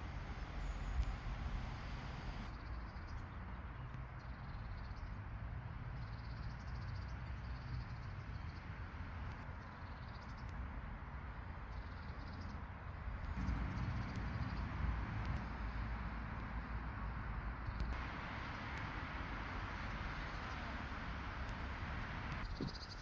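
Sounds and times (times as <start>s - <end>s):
birds chirping in high trills: 0.0s - 3.3s.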